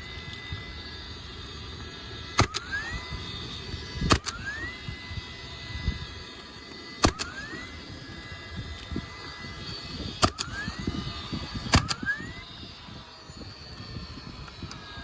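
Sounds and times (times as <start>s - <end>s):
nail gun motor whining: 0.0s - 15.0s
nail gun cracks: 2.3s - 3.2s, 4.0s - 4.9s, 6.3s - 12.6s.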